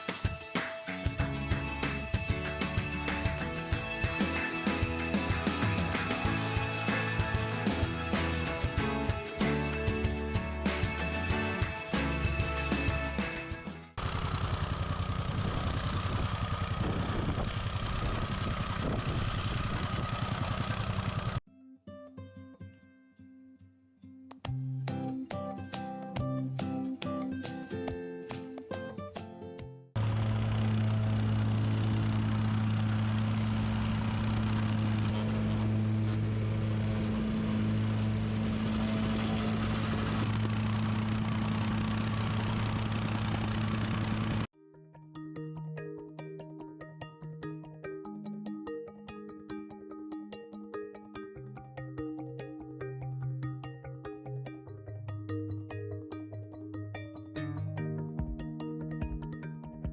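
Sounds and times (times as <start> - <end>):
heavy machinery engine pulsing: 14.0 - 21.4, 30.0 - 44.5.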